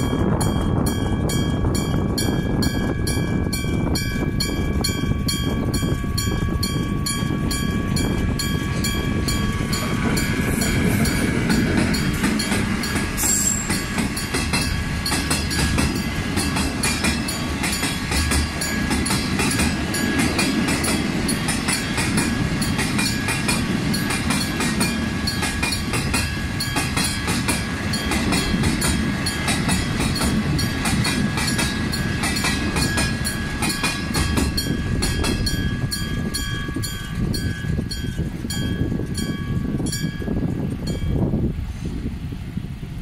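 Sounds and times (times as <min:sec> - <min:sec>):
low train rumble: 0:00.0 - 0:43.0
train wheels clacking over rail joints: 0:07.1 - 0:41.0.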